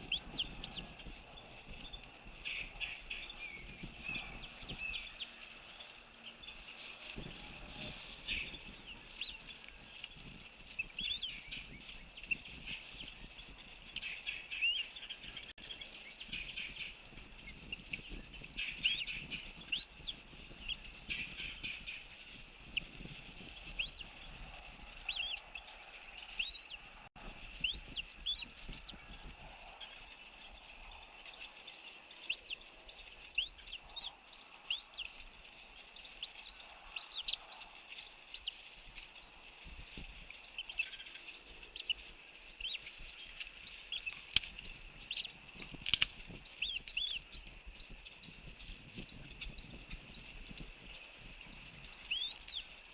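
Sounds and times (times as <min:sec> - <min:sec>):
whistled bird calls: 0:00.0 - 0:00.9, 0:18.0 - 0:20.2, 0:26.3 - 0:26.8, 0:27.6 - 0:29.1, 0:34.7 - 0:35.1, 0:52.0 - 0:52.7
birds chirping: 0:00.0 - 0:52.9.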